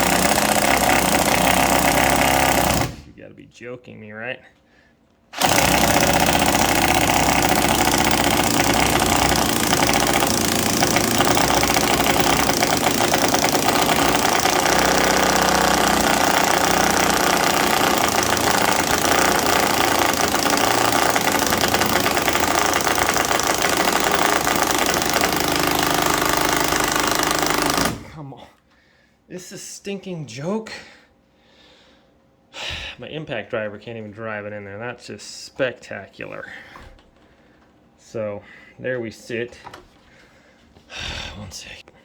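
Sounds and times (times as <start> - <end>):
impact driver hammering: 0.0 - 3.1, 5.4 - 28.1.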